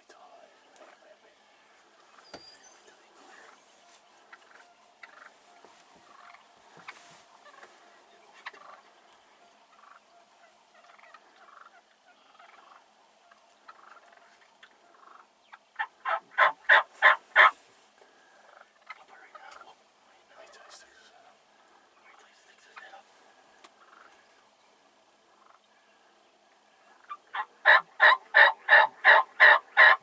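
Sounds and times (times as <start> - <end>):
turkey gobbling: 3.2 - 30.0.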